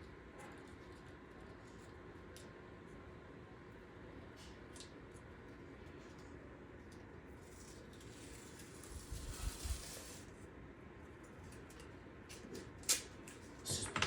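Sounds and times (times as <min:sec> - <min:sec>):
tape peeling off roll: 0:07.6 - 0:10.4.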